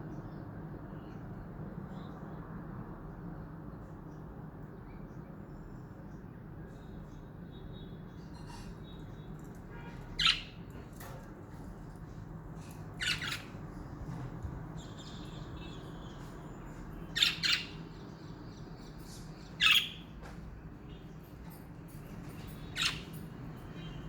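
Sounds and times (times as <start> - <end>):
faint bird chatter: 3.4 - 24.0
budgerigars squawking: 13.0 - 13.6.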